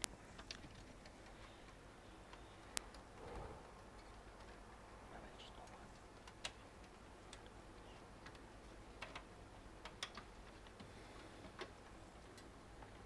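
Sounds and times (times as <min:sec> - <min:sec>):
faint clicks and taps of cables: 0:05.5 - 0:13.0.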